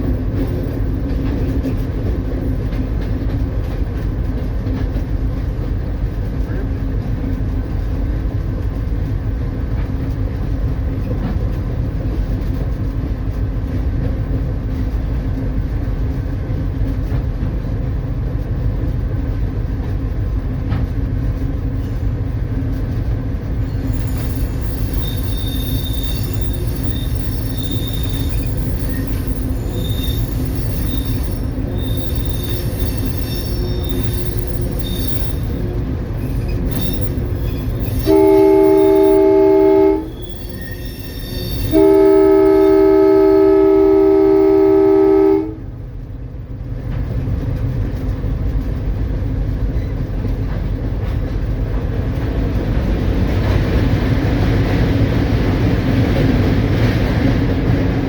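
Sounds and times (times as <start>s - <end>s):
train rumbling along track: 0.0s - 58.0s
high-pitched wheel squeal: 23.6s - 43.9s.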